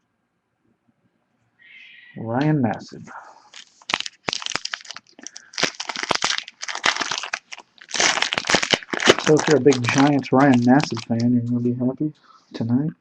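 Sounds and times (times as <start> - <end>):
plastic crinkling and rustling: 3.5 - 11.4.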